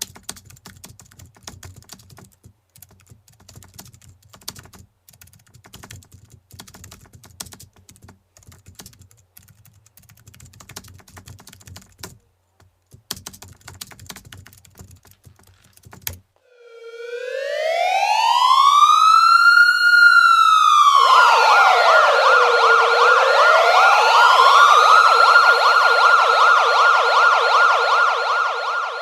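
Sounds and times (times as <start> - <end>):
fast keyboard typing: 0.0 - 12.2, 12.9 - 16.3.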